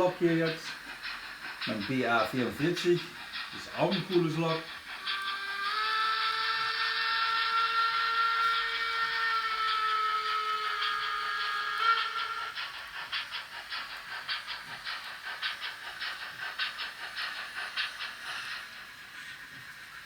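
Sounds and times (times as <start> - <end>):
steam locomotive chuffing: 0.0 - 20.0
model train whistle: 5.0 - 12.6.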